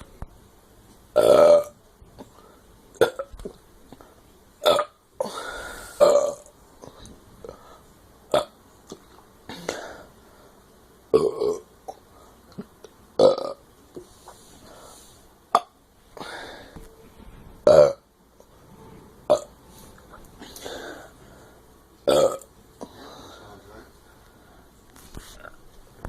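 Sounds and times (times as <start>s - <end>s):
person burping: 1.2s - 1.8s, 3.0s - 3.3s, 4.6s - 6.5s, 11.1s - 12.0s, 13.2s - 13.6s, 17.6s - 18.0s, 19.3s - 19.5s, 22.0s - 22.5s.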